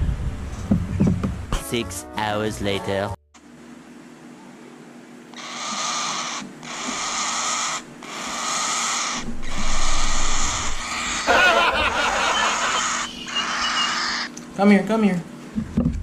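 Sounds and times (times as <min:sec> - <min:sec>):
bird chick begging calls: 0:05.4 - 0:11.3, 0:12.3 - 0:14.3.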